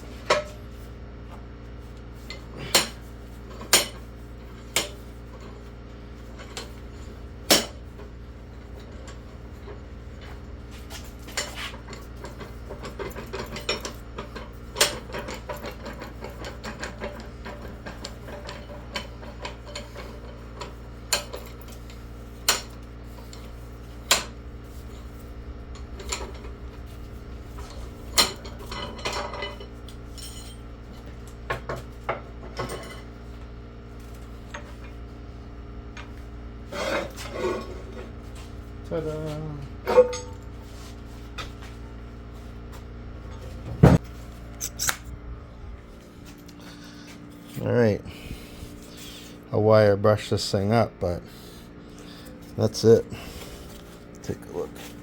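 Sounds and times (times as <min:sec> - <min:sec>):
metal clanks and knocks: 0:07.4 - 0:33.1, 0:39.8 - 0:40.5, 0:43.2 - 0:44.1
low hum: 0:19.4 - 0:33.4.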